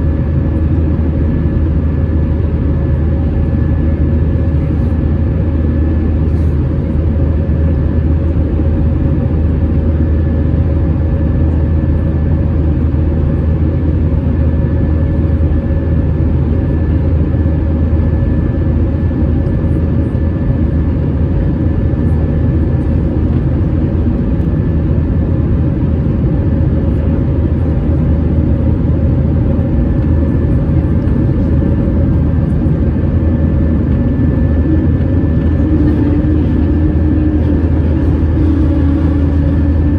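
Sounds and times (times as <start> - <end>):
airplane cabin engine drone: 0.0 - 39.9
faint steady whine: 25.8 - 39.9.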